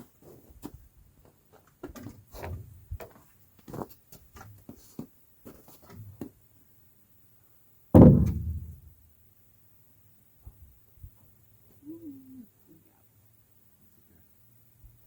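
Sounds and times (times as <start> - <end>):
loud thud of wooden plank: 8.0 - 8.9.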